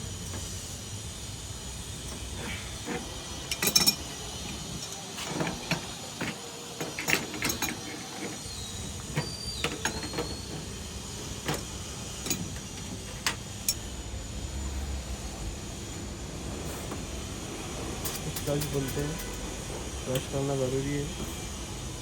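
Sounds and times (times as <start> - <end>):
spanner clicking on metal: 2.0 - 8.5, 18.0 - 19.4.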